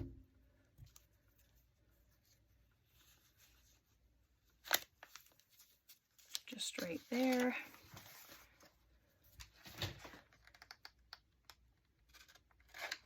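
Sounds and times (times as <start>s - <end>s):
paper rustle: 0.9s - 10.7s.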